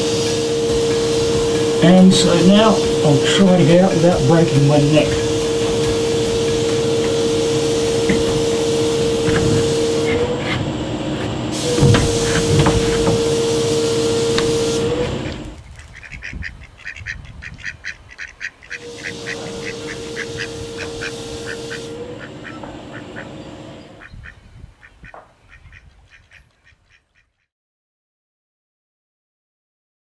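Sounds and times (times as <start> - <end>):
hissing machine hum: 0.0 - 15.6, 18.7 - 24.1
ducks quacking: 15.7 - 27.4.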